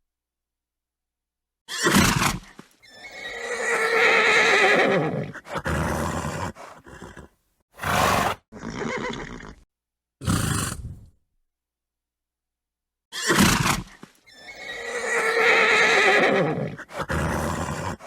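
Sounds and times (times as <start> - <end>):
horse neighing: 1.7 - 9.6, 14.3 - 18.0
horse snorting: 4.8 - 9.6, 10.2 - 11.2, 16.1 - 18.0.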